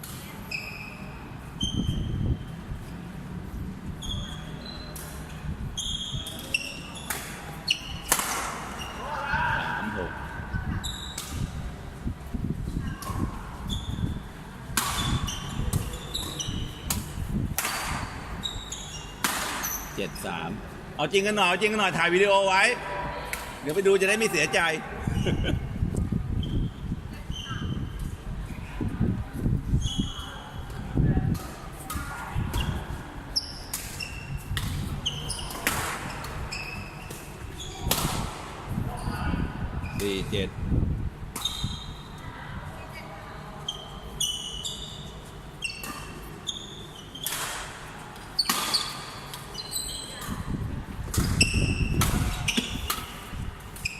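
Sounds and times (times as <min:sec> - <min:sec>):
shoe squeaks on court floor: 0:00.4 - 0:02.4, 0:04.0 - 0:05.2, 0:05.8 - 0:09.0, 0:10.8 - 0:11.5, 0:12.8 - 0:14.2, 0:15.0 - 0:20.0, 0:29.7 - 0:30.7, 0:32.6 - 0:38.0, 0:41.4 - 0:42.2, 0:42.8 - 0:47.7, 0:48.4 - 0:50.6, 0:51.2 - 0:53.2.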